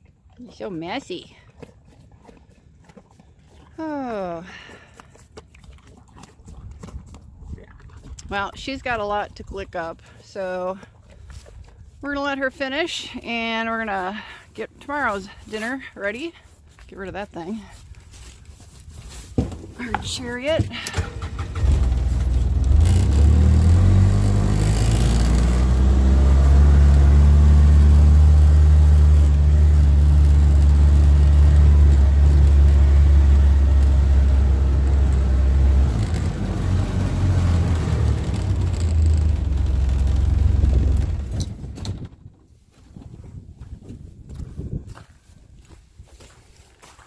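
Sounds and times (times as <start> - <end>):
small vehicle engine droning: 19.8 - 42.4.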